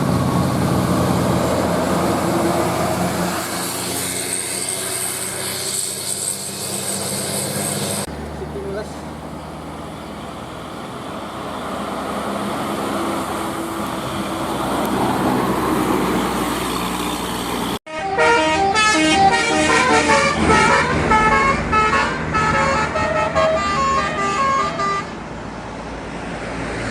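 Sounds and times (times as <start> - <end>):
vehicle road and engine noise: 0.0 - 26.9
musical air horn tune: 17.9 - 25.2.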